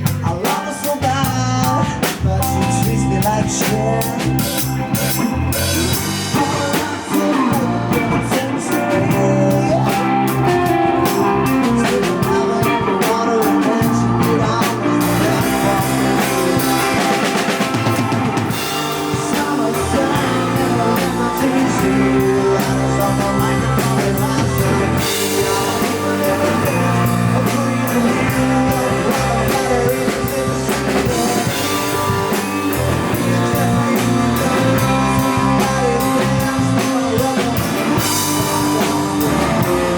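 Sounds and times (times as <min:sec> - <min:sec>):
drum kit beat: 0:00.0 - 0:39.9
live rock band: 0:00.0 - 0:39.9.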